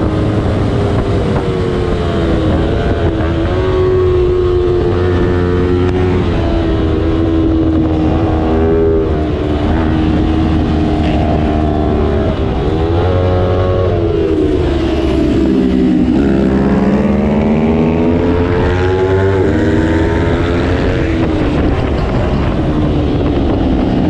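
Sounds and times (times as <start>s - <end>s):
racing motorcycle engine revving: 0.0s - 24.0s
steady low rumble: 0.0s - 24.0s.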